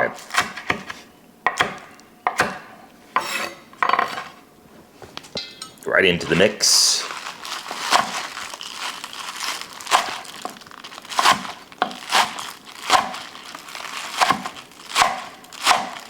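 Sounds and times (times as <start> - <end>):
cabbage rustling and crunching: 6.2 - 16.0.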